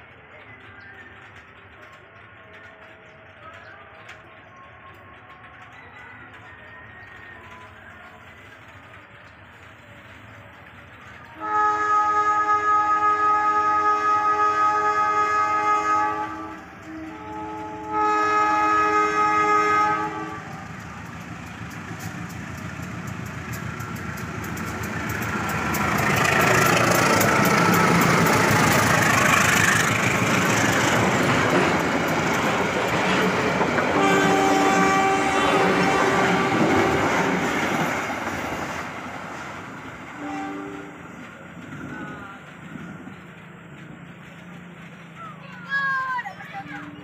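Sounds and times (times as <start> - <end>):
train passing on rails: 0.0 - 47.0
wheels clicking over rail joints: 0.0 - 47.0
locomotive horn blasts: 11.4 - 20.5, 33.9 - 37.1, 40.2 - 41.0.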